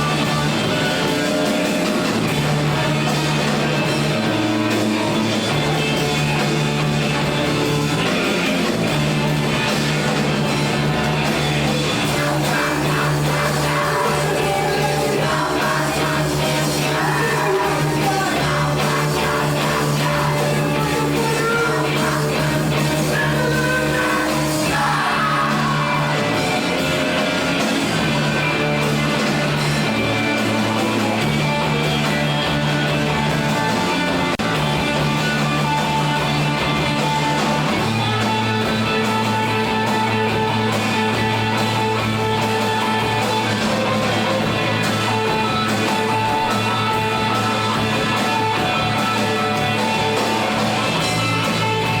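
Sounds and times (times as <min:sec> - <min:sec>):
rock band playing: 0:00.0 - 0:52.0
shouted singing: 0:12.0 - 0:27.4.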